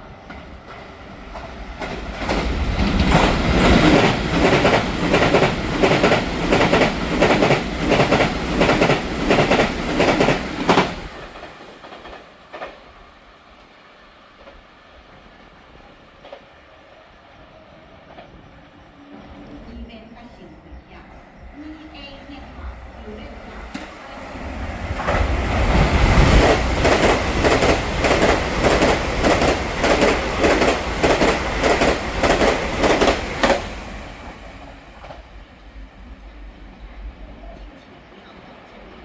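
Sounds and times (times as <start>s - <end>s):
train wheels clacking over rail joint: 1.8s - 12.9s, 23.6s - 35.3s.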